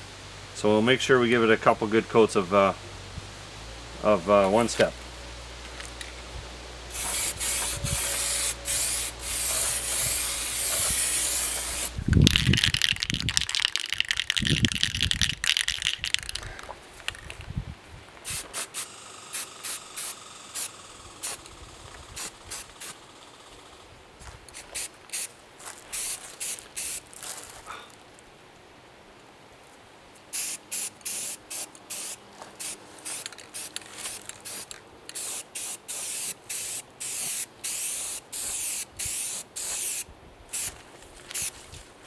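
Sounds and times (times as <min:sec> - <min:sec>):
aerosol can spraying: 0:06.9 - 0:12.0, 0:18.2 - 0:21.5, 0:22.1 - 0:23.0, 0:24.5 - 0:25.3, 0:25.9 - 0:27.1, 0:30.3 - 0:41.6.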